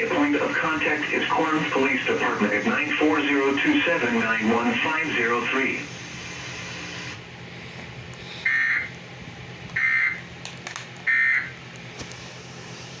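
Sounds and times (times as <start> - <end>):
radio background hiss: 0.0 - 7.2.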